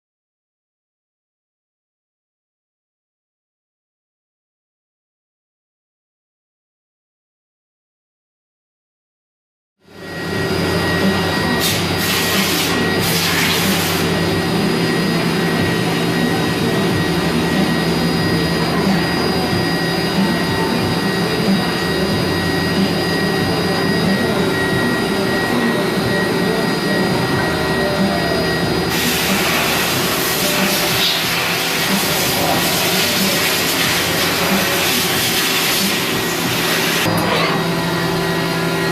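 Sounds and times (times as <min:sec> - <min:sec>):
milling machine hum: 0:09.9 - 0:38.9.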